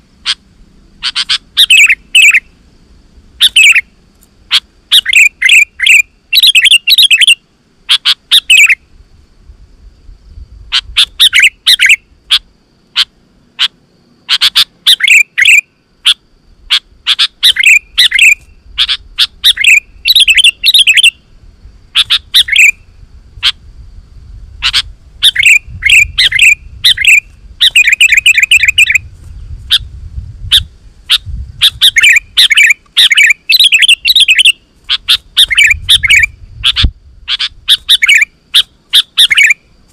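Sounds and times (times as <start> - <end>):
bird singing bright chirps: 1.0 - 2.6, 3.4 - 8.9, 10.7 - 23.6, 24.6 - 39.9.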